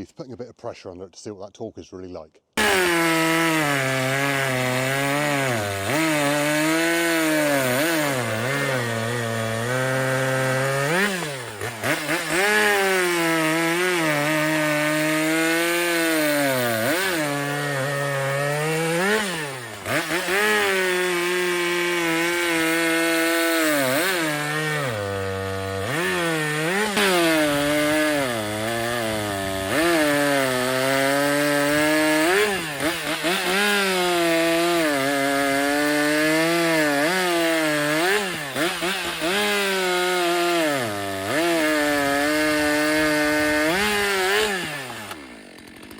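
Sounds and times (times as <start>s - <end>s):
chainsaw cutting wood: 2.6s - 45.9s.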